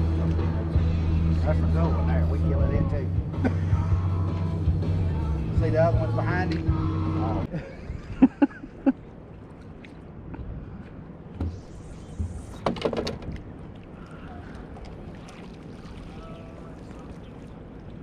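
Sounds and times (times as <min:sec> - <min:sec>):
wind and water noise: 0:00.0 - 0:18.0
knocks and clatter on boat: 0:11.3 - 0:13.8.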